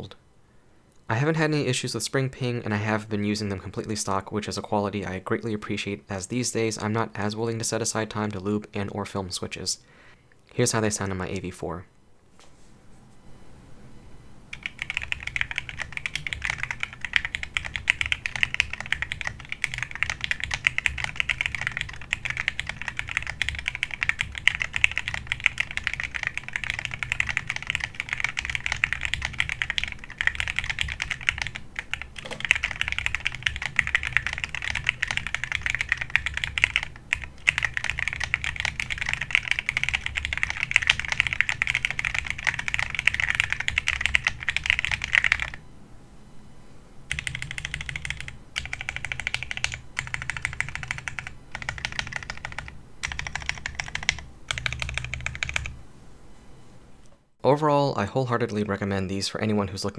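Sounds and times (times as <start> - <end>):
mechanical keyboard typing: 14.5 - 45.6, 47.1 - 55.8.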